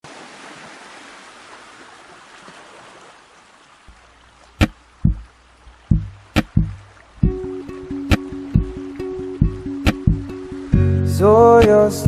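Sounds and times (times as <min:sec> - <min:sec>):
loud drum hits: 0:05.9 - 0:07.4
background music: 0:06.4 - 0:12.0.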